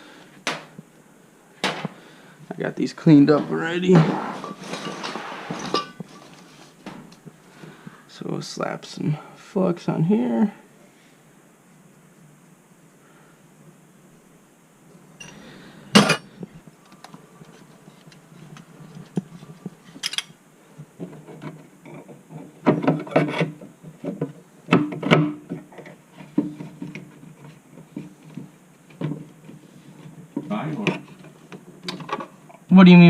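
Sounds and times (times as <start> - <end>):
metal pipe fittings clinking: 15.2 - 15.4, 20.0 - 20.3.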